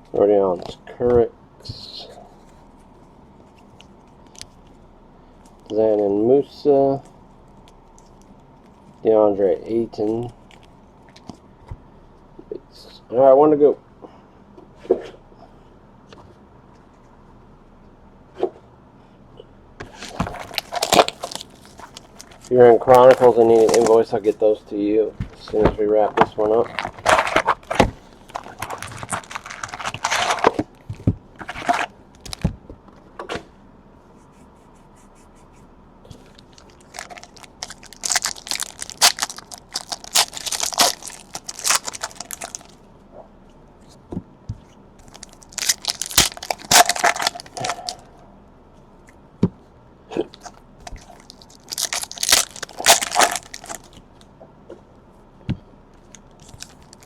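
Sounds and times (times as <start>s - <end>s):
plastic wrappers tearing and crackling: 19.9s - 24.4s, 26.3s - 30.6s, 31.4s - 32.5s, 36.2s - 42.8s, 45.0s - 48.0s, 50.4s - 54.0s, 56.2s - 57.0s.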